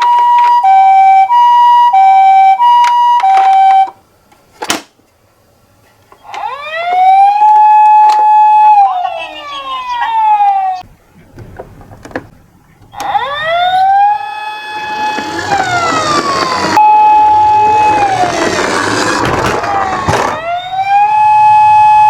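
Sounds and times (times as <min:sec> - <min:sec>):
siren wail rising and falling: 0:00.0 - 0:03.9, 0:06.2 - 0:10.8, 0:12.9 - 0:22.0
toy siren two-tone hi-lo: 0:00.0 - 0:03.9, 0:06.2 - 0:10.8, 0:13.0 - 0:22.0.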